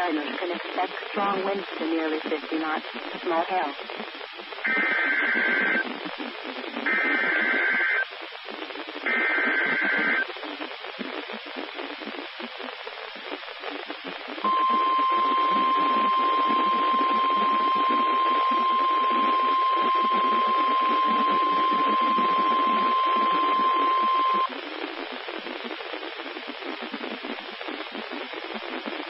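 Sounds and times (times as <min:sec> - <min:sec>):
radio static hiss: 0:00.0 - 0:29.0
buzzing two-tone data bursts: 0:04.6 - 0:05.8, 0:06.8 - 0:08.0, 0:14.4 - 0:24.5
steady warning alarm tone: 0:14.5 - 0:24.5.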